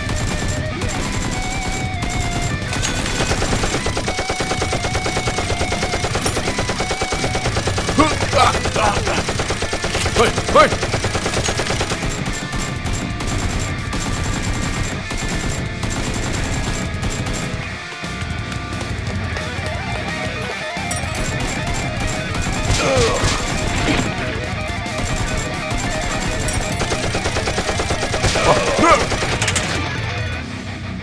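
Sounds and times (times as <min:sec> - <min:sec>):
automatic gunfire bursts: 0:00.0 - 0:17.7, 0:20.9 - 0:29.9
background music: 0:00.0 - 0:31.0
short shouts: 0:07.9 - 0:09.4, 0:10.0 - 0:10.9, 0:28.2 - 0:29.3.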